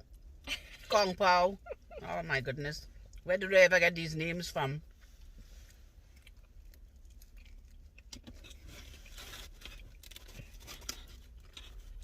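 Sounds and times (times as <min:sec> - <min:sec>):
chewing and food handling crackles: 0:05.0 - 0:12.0.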